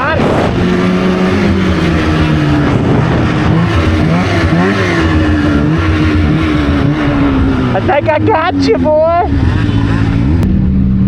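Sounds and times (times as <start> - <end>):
wind noise: 0.0 - 7.9
snowmobile engine running hard: 0.0 - 11.0
track noise: 0.0 - 11.0.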